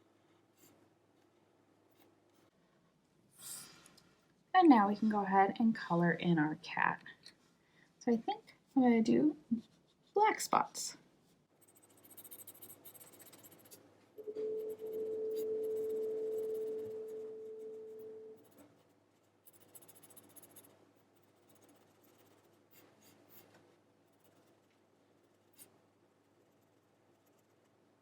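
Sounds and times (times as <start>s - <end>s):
pencil colouring on paper: 11.5s - 13.8s, 14.4s - 27.9s
steady tone: 14.2s - 18.5s.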